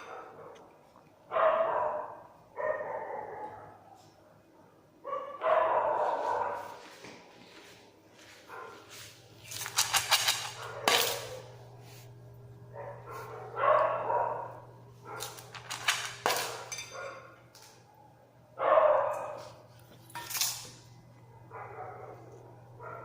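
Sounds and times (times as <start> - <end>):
dog barking: 0.0 - 0.7, 1.3 - 3.9, 5.0 - 6.8, 8.5 - 8.9, 12.7 - 15.4, 18.6 - 19.6, 21.2 - 23.0
steady low hum: 7.9 - 23.0.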